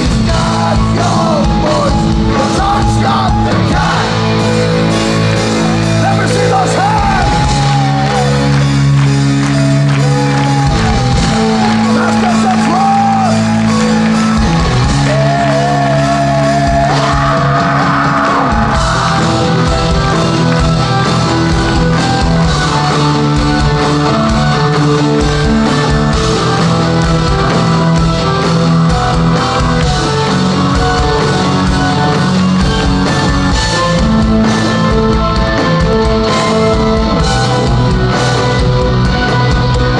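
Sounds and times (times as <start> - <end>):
person singing: 0.0 - 4.7, 15.0 - 19.1
heavy metal band playing live: 0.0 - 39.9.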